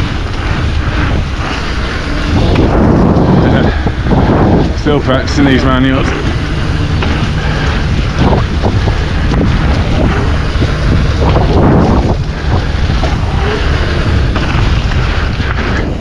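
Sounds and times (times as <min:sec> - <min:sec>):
tyres rumbling on trail: 0:00.0 - 0:16.0
wind buffeting microphone: 0:00.0 - 0:16.0
bike knocking over bumps: 0:06.0 - 0:16.0.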